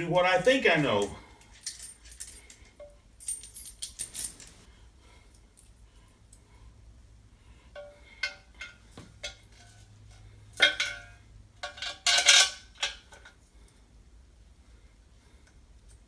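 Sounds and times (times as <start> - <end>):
metal hardware clinking: 1.0 - 4.7, 10.6 - 13.4.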